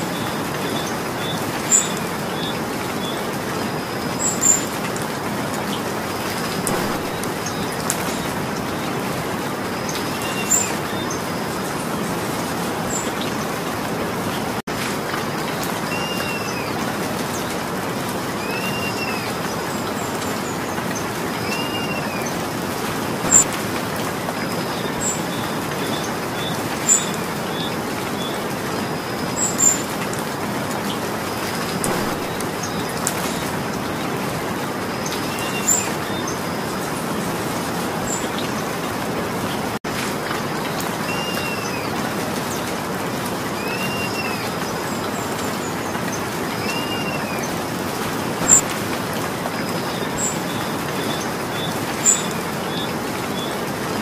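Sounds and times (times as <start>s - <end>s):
steady rain falling: 0.0s - 54.0s
bird calling: 6.6s - 8.4s, 23.2s - 23.5s, 31.6s - 33.6s, 46.6s - 47.6s, 48.4s - 48.7s.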